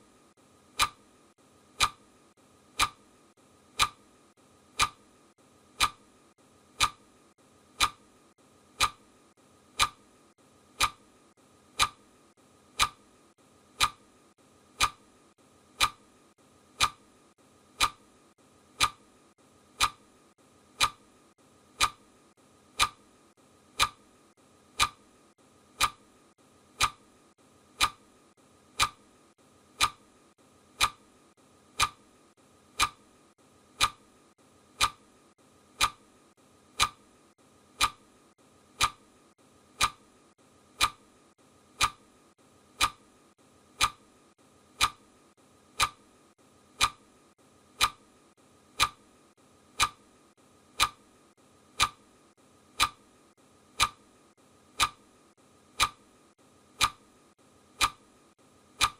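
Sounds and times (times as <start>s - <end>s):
timer ticking: 0.7s - 1.1s, 1.7s - 2.1s, 2.7s - 3.1s, 3.7s - 4.1s, 4.7s - 5.1s, 5.7s - 7.1s, 7.7s - 8.1s, 8.7s - 9.1s, 9.7s - 10.1s, 10.7s - 11.1s, 11.7s - 12.1s, 12.7s - 14.1s, 14.7s - 19.1s, 19.7s - 20.1s, 20.7s - 21.0s, 21.7s - 22.0s, 22.7s - 23.1s, 23.7s - 24.1s, 24.7s - 25.1s, 25.7s - 26.1s, 26.7s - 27.0s, 27.7s - 28.1s, 28.7s - 29.1s, 29.7s - 30.0s, 30.8s - 31.0s, 31.8s - 32.1s, 32.7s - 33.1s, 33.8s - 35.0s, 35.7s - 36.1s, 36.7s - 37.1s, 37.8s - 38.1s, 38.7s - 40.1s, 40.7s - 41.0s, 41.7s - 42.0s, 42.8s - 43.0s, 43.8s - 44.0s, 44.8s - 45.1s, 45.7s - 46.1s, 46.7s - 47.1s, 47.7s - 48.0s, 48.7s - 49.1s, 49.7s - 50.0s, 50.8s - 51.0s, 51.8s - 52.1s, 52.8s - 53.1s, 53.8s - 54.0s, 54.8s - 55.0s, 55.8s - 56.1s, 56.8s - 57.1s, 57.8s - 58.1s.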